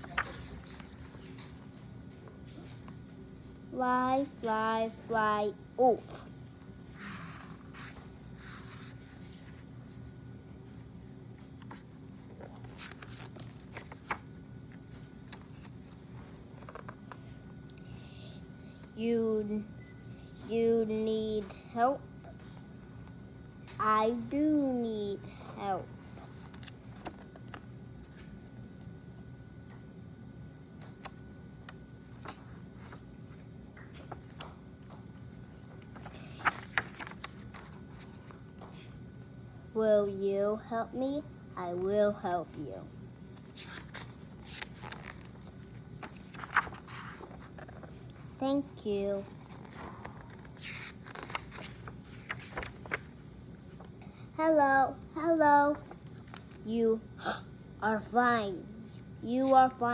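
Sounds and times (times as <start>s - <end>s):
paper pages rustling: 0.0s - 4.7s, 7.0s - 17.4s, 25.8s - 28.5s, 32.2s - 38.7s, 43.0s - 48.4s, 49.0s - 54.0s, 55.7s - 56.6s
low steady hum: 0.0s - 59.9s.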